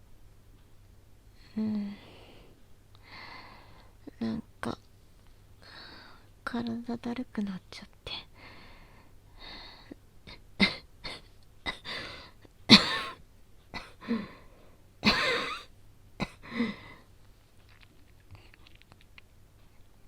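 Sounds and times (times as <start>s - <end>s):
soft breaths: 1.3s - 4.2s, 4.8s - 6.4s, 8.0s - 10.4s, 13.9s - 14.9s, 16.4s - 17.6s
woman coughing: 10.6s - 12.0s, 12.7s - 13.2s, 13.8s - 14.1s, 15.0s - 16.8s.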